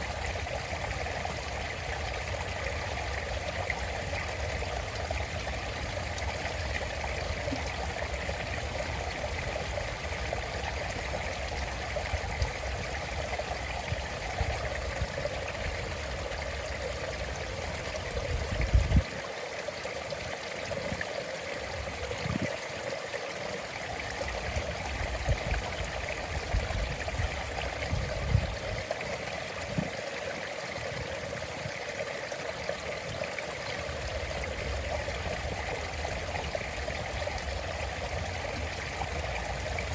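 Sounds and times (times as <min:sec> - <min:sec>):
stream babbling over stones: 0:00.0 - 0:39.9.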